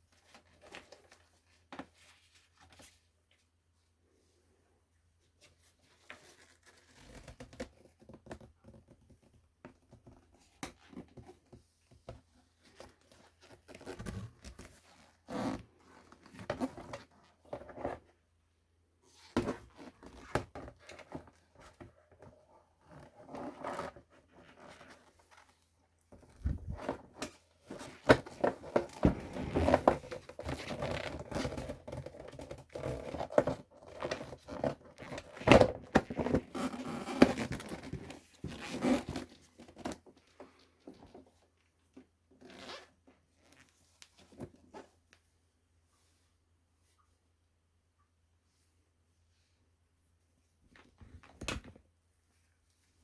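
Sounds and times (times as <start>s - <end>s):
rustling and crinkling: 5.2s - 18.2s, 19.1s - 45.3s.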